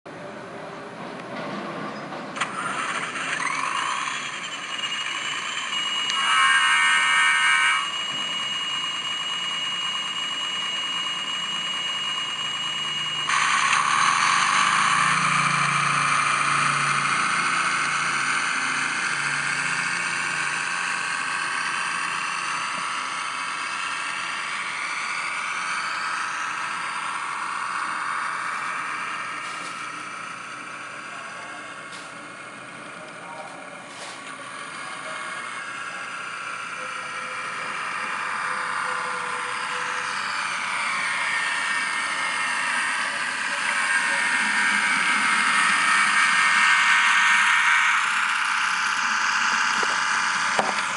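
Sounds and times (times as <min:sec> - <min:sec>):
model train engine whine: 0:02.3 - 0:50.9
model train horn: 0:06.1 - 0:07.9.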